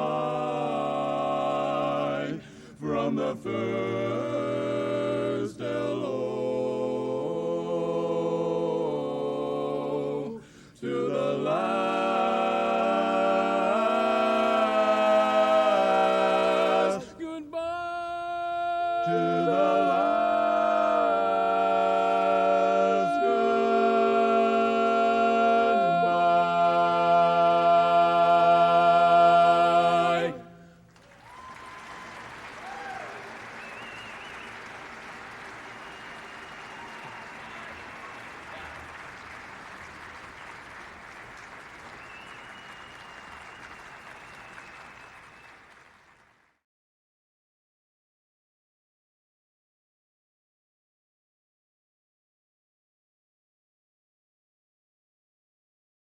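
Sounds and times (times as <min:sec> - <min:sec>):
barbershop quartet singing: 0:00.0 - 0:30.6.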